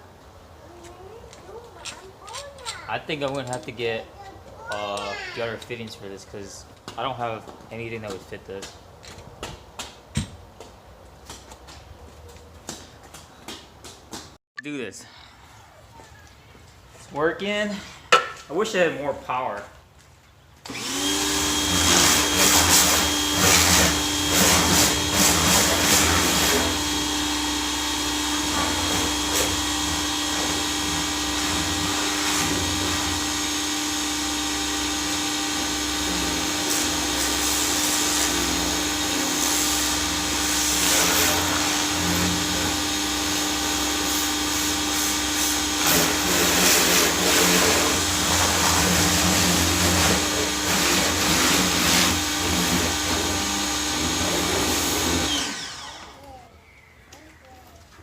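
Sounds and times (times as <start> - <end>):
pressure washer motor humming: 20.7 - 56.2.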